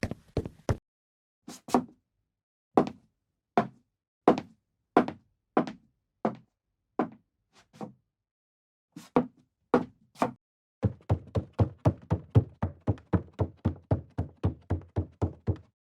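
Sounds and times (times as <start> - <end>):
footsteps on wooden floor: 0.0 - 0.8.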